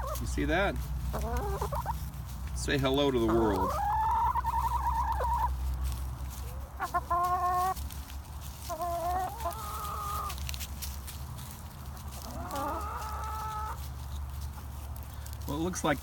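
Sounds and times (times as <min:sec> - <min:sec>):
chickens squawking: 0:00.0 - 0:15.6.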